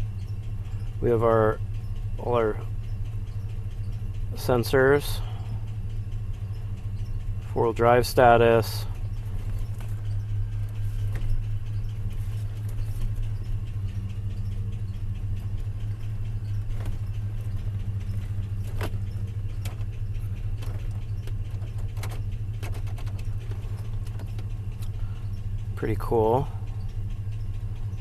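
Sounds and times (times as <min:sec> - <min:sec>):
car engine idling: 0:00.0 - 0:28.0
faint clicks: 0:08.8 - 0:25.7.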